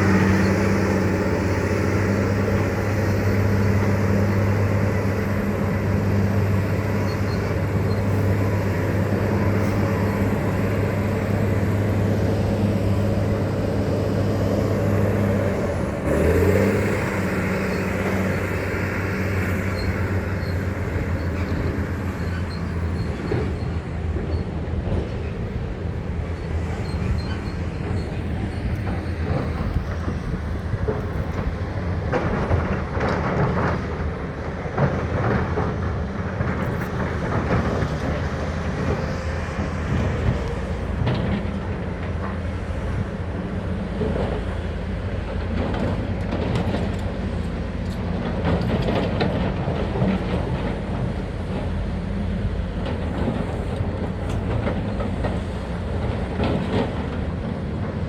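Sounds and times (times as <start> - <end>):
excavator diesel engine running: 0.0 - 58.0
clanks and rattles of steel and rock: 19.7 - 58.0.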